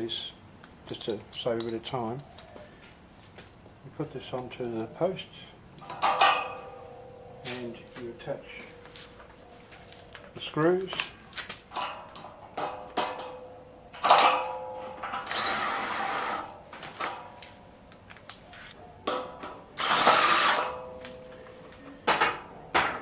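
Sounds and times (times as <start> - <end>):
power drill whining: 15.2 - 17.0, 19.8 - 20.7.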